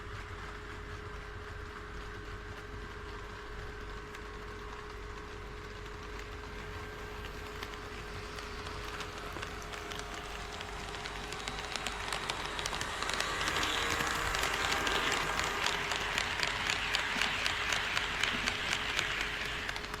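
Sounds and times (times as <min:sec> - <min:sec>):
model train rolling on track: 0:00.0 - 0:20.0
wheels clicking over rail joints: 0:05.6 - 0:20.0.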